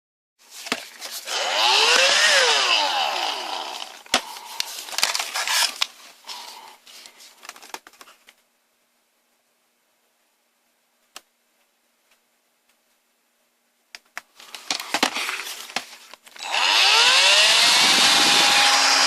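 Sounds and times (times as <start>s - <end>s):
vacuum motor whine: 1.3s - 4.0s, 16.4s - 19.0s.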